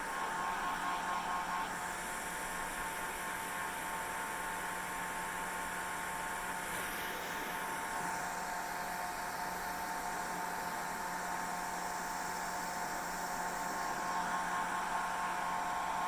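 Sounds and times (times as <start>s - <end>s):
hair dryer running: 0.0s - 4.6s, 12.7s - 16.0s.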